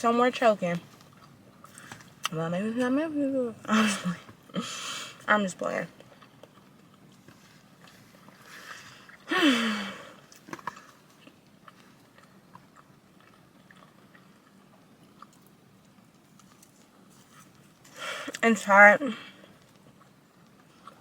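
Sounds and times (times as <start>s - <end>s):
person chewing: 0.8s - 2.4s, 5.9s - 18.4s, 19.3s - 21.0s.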